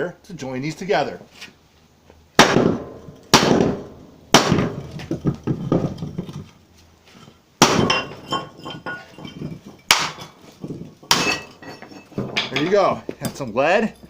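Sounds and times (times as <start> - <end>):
broken cast iron clinking: 4.8 - 6.5, 7.1 - 14.0.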